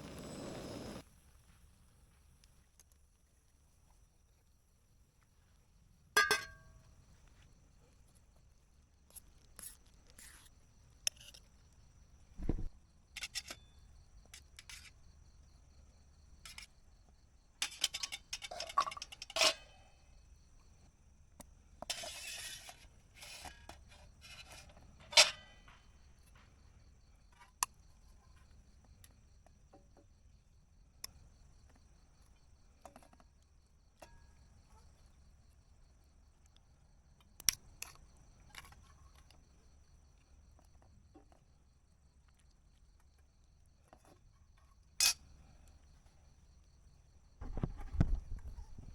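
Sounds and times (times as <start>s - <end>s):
utensils clinking on cookware: 6.2s - 6.6s.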